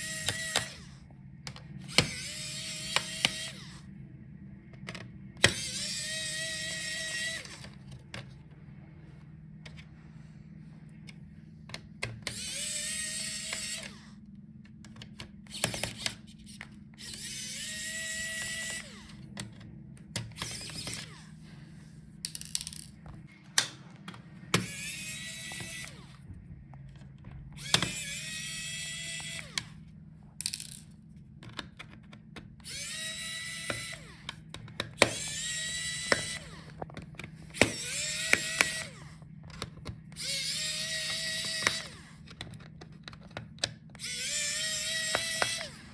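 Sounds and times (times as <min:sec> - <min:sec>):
electric screwdriver whine: 0:00.0 - 0:01.1, 0:01.8 - 0:03.9, 0:05.4 - 0:08.0, 0:12.2 - 0:14.2, 0:15.5 - 0:19.3, 0:20.2 - 0:21.4, 0:24.5 - 0:26.8, 0:27.6 - 0:29.8, 0:32.6 - 0:42.4, 0:43.6 - 0:45.9
small clicks of screws: 0:11.1 - 0:14.1, 0:31.4 - 0:45.9.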